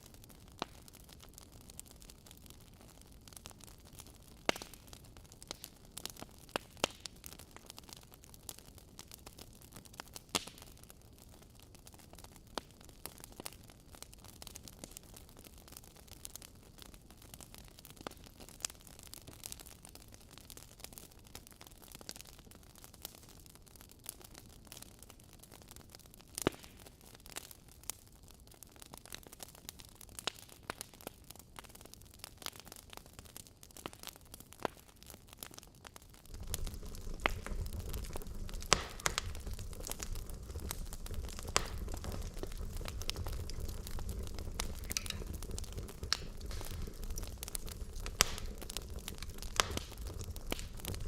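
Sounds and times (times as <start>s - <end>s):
fire crackling and popping: 0.0s - 51.0s
soft fire hiss: 33.8s - 51.0s.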